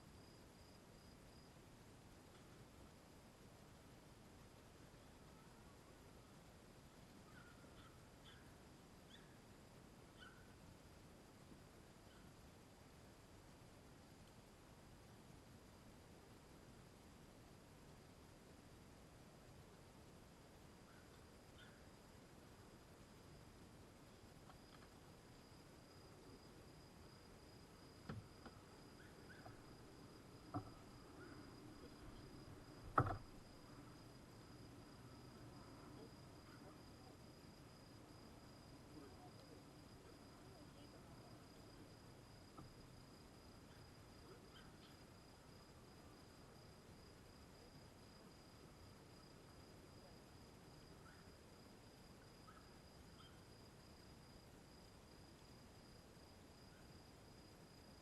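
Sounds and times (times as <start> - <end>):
insect trill: 0.0 - 1.6, 7.1 - 9.5, 10.1 - 10.7, 20.4 - 58.0.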